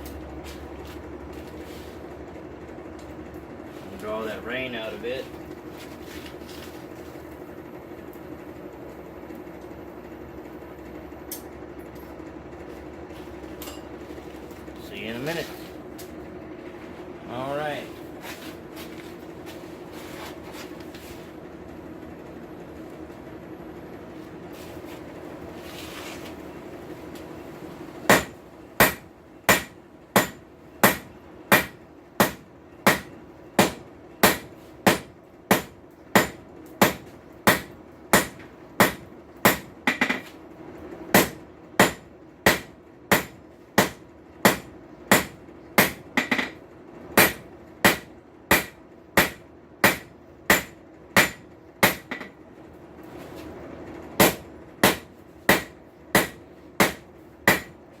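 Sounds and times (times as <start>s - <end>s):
steady low hum: 0.0s - 58.0s
hammer striking steel on anvil: 13.6s - 13.9s, 28.1s - 40.3s, 41.1s - 46.6s, 47.2s - 52.4s, 54.2s - 57.8s.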